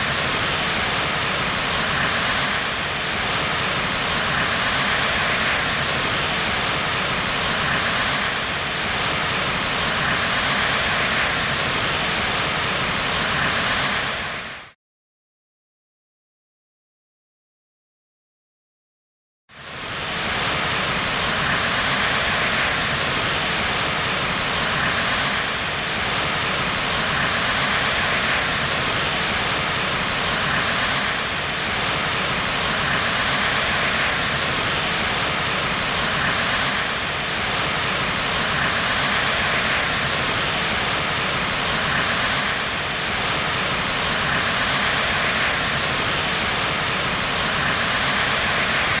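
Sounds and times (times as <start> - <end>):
rushing white water: 0.0 - 14.7, 19.6 - 49.0.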